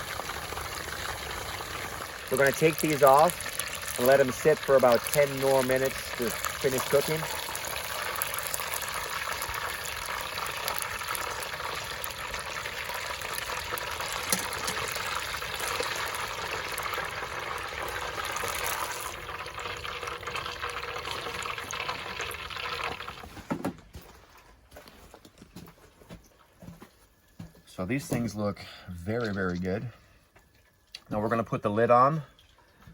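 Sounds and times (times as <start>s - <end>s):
hot oil sizzling: 0.0s - 23.2s.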